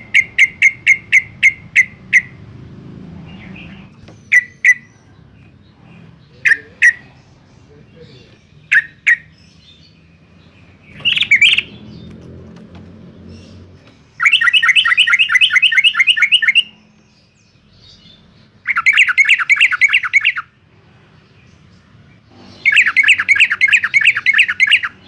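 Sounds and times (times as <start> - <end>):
bulbul chirping: 0.0 - 2.6, 3.3 - 5.7, 6.3 - 12.1, 13.3 - 17.2, 17.8 - 20.6, 22.4 - 25.0.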